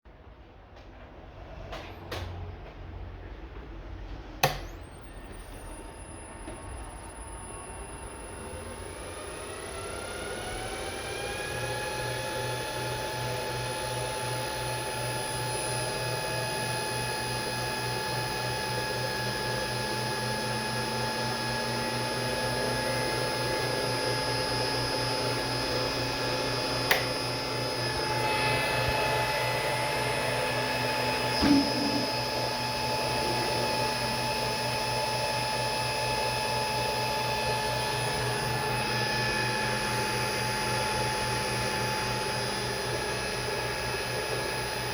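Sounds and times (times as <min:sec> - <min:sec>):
sharp click: 0:04.4 - 0:04.8, 0:26.9 - 0:27.2
electric motor whining: 0:07.9 - 0:44.9.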